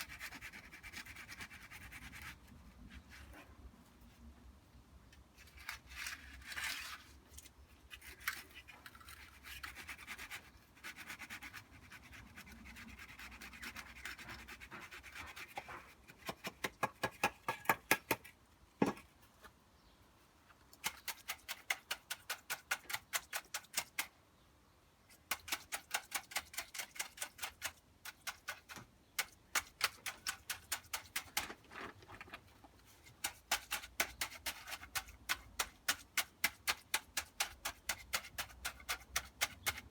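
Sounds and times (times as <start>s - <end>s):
tapping on concrete formwork: 14.2s - 19.0s.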